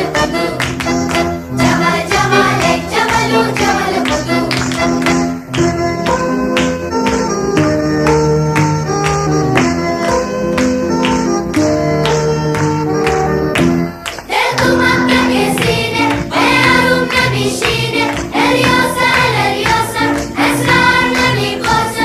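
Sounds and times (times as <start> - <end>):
voices singing: 0.0 - 0.6, 1.5 - 4.9, 14.2 - 22.0
steady beat: 13.6 - 22.0.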